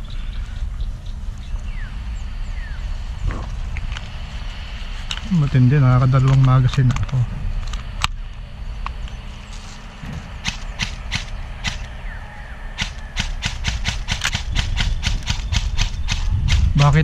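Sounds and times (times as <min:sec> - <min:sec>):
steady low rumble: 0:00.0 - 0:17.0
airsoft gun firing single shots: 0:10.4 - 0:11.9, 0:12.8 - 0:16.7.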